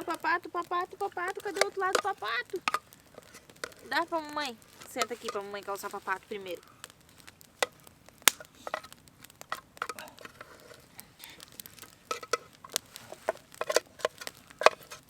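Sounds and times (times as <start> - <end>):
sharp clicks and light taps: 0.0 - 6.0.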